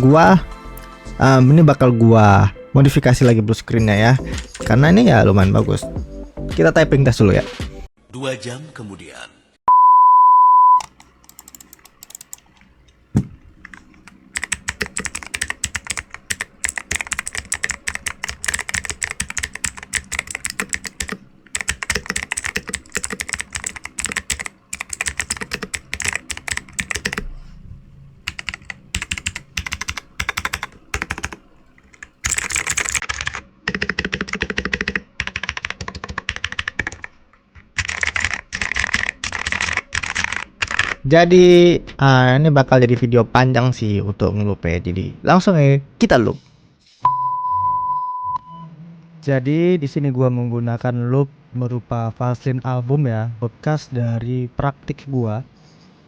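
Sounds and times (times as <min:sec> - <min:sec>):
mechanical keyboard key clicks: 0:10.8 - 0:12.5, 0:13.6 - 0:27.3, 0:28.2 - 0:33.2.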